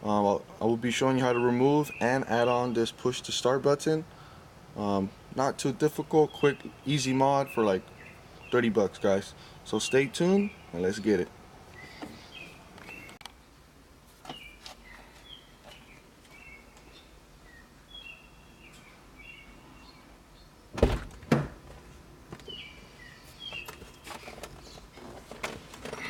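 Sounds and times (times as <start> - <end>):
small birds chirping: 0.6 - 20.8, 22.3 - 25.1
sharp thunks: 20.7 - 22.6.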